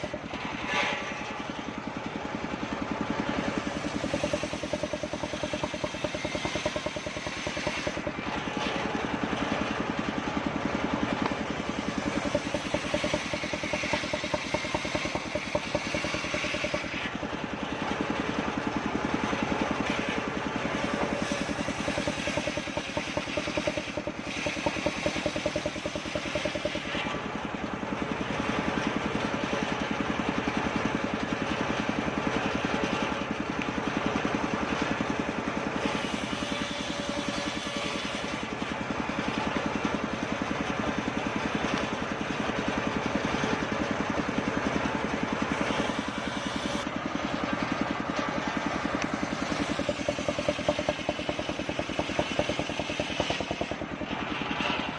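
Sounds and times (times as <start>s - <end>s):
circular saw cutting wood: 0.0s - 1.8s, 2.5s - 9.8s, 10.9s - 27.5s, 35.6s - 39.5s, 44.9s - 46.9s, 47.6s - 54.9s.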